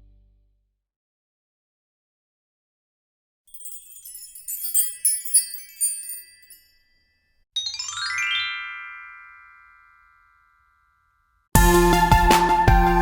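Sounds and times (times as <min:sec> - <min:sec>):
twinkling chime: 0:03.5 - 0:11.3
upward run of bell tones: 0:03.5 - 0:12.3.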